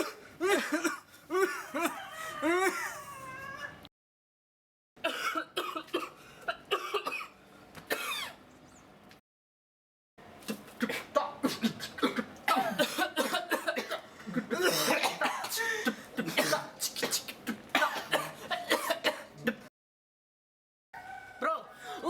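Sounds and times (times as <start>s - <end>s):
person coughing: 5.0s - 7.3s, 10.5s - 19.7s.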